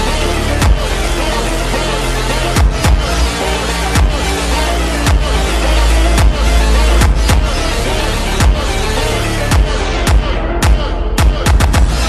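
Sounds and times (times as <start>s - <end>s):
drum hits with bass sweeps: 0.0s - 12.0s
slowed phonk track: 0.0s - 12.0s.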